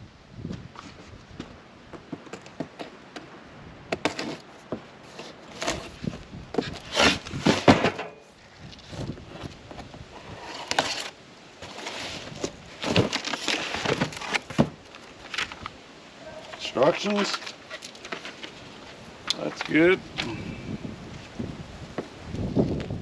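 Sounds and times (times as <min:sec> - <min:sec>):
cardboard box rustling and scraping: 0:03.9 - 0:15.7, 0:16.4 - 0:19.8.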